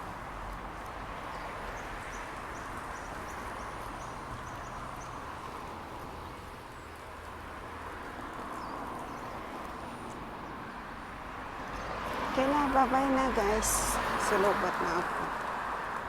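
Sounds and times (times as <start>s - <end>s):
road traffic hum: 0.0s - 16.0s.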